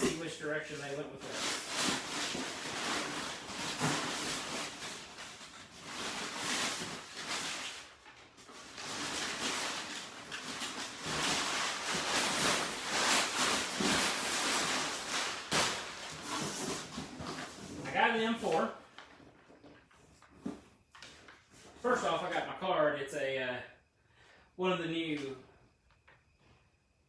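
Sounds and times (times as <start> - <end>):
packing material crinkling: 1.2 - 18.7.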